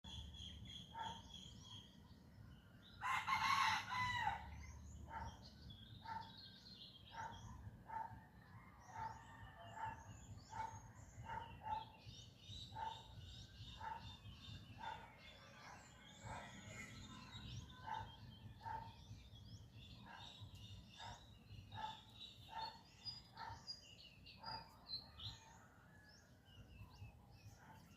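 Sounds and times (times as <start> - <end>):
small birds chirping: 0.0 - 27.9
rooster crowing: 3.0 - 4.5.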